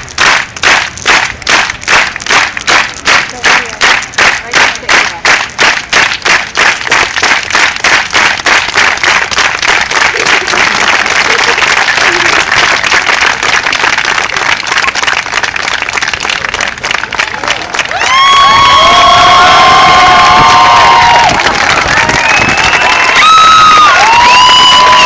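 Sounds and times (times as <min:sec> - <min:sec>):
crowd clapping in unison: 0:00.0 - 0:25.0.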